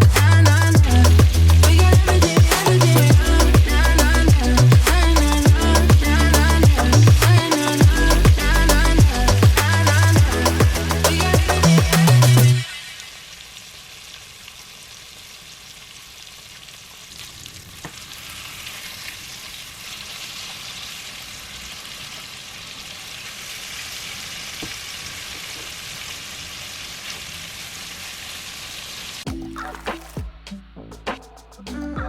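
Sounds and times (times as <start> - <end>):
meat sizzling in a pan: 12.6 - 29.3.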